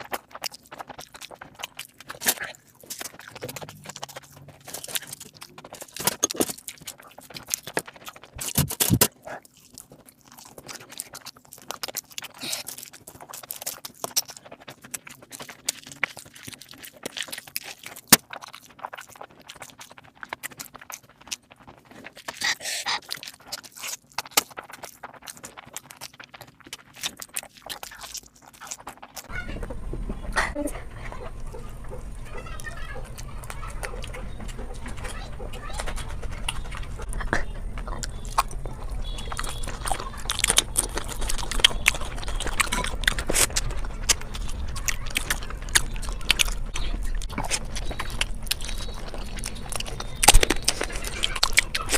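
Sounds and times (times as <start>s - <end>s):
food being chewed and crunched: 0.0s - 51.9s
mouth clicks: 27.2s - 51.9s.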